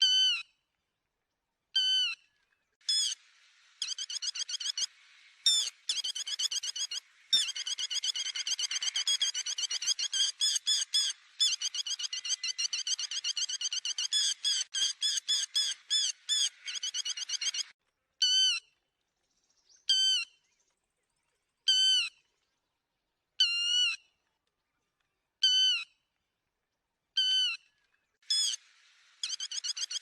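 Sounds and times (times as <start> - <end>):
lapwing calls: 3.8 - 18.6, 28.3 - 28.6, 29.2 - 30.0.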